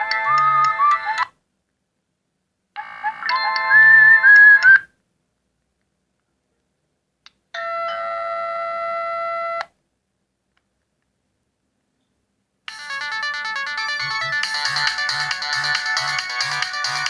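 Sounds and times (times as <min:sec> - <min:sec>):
electronic ringtone melody: 0:12.7 - 0:17.0
held chord of electronic tones: 0:12.7 - 0:17.0.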